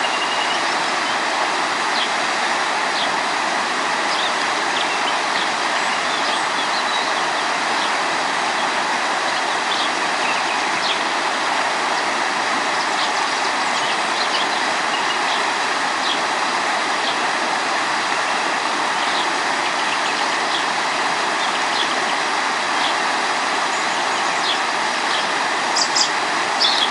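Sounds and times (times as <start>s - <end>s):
bird chirps: 0.0s - 0.6s, 25.8s - 26.9s
river water rushing: 0.0s - 26.9s.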